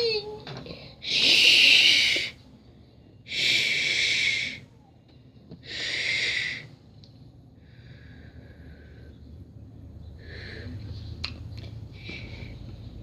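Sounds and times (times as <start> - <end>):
breathy hisses: 0.9 - 2.5, 3.3 - 4.7, 5.6 - 6.8.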